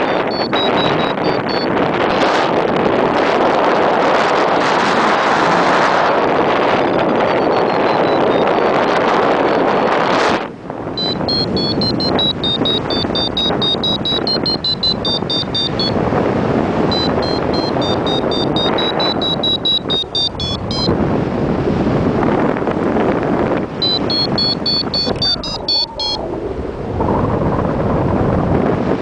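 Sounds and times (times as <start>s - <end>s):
high-pitched variometer beeping: 0.0s - 2.2s, 6.1s - 16.0s, 16.9s - 21.0s, 23.8s - 26.2s
wind noise on microphone: 0.0s - 29.0s.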